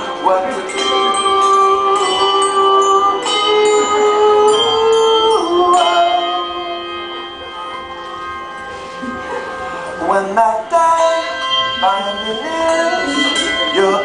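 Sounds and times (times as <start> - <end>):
handbells playing a melody: 0.0 - 14.0.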